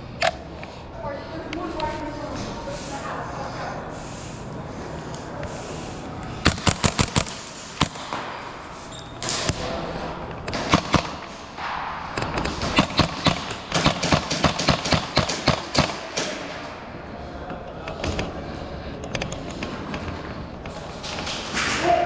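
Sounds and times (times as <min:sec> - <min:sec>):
airsoft guns firing: 0:06.4 - 0:08.5, 0:10.5 - 0:16.8.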